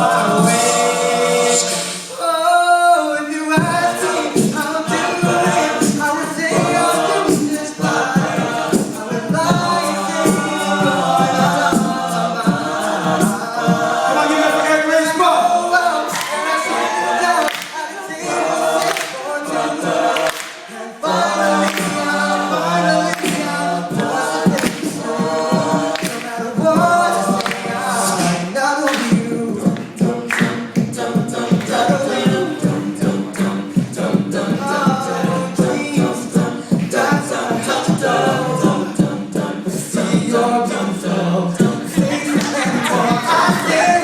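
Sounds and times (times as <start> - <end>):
a cappella group singing: 0.0 - 44.0.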